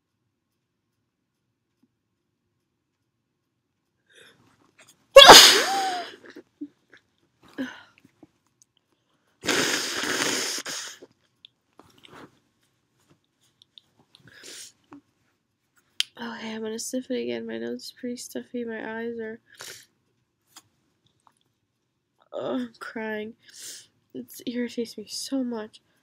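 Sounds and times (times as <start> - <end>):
person sneezing: 5.2 - 6.2, 9.4 - 11.0.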